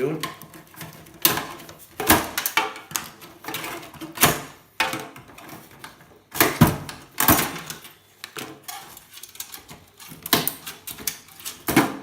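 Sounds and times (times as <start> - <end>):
cables knocking against computer case: 0.2 - 8.7.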